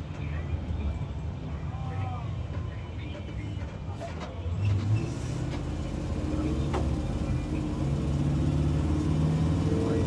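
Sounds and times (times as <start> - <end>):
bus engine running: 4.8 - 10.0.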